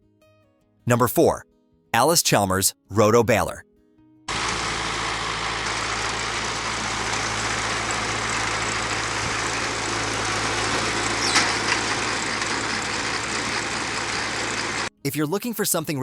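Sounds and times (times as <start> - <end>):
low hum: 4.3 - 14.9
tractor engine running: 4.3 - 14.9.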